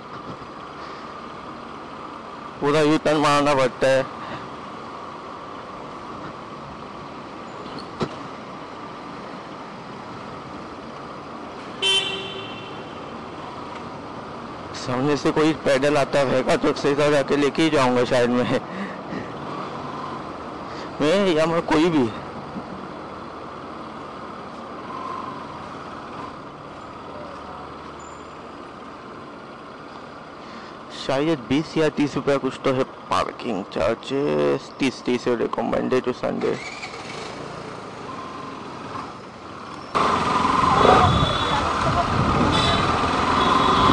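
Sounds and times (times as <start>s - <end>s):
motorcycle riding in traffic: 0.0s - 43.9s
vehicle horn honking: 11.8s - 13.1s, 40.8s - 41.8s, 42.4s - 43.9s.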